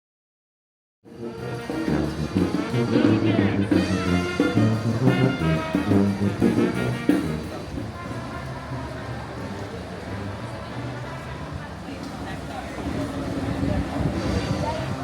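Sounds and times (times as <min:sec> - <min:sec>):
jazz music with brass horns: 0:01.0 - 0:09.5.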